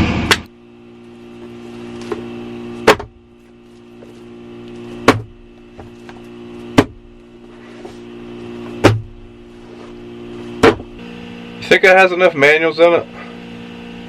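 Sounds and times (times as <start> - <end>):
engine hum: 0.0 - 14.0
sharp knocks: 2.8 - 3.2, 5.0 - 5.4, 6.8 - 7.1, 8.8 - 9.2, 10.6 - 11.0.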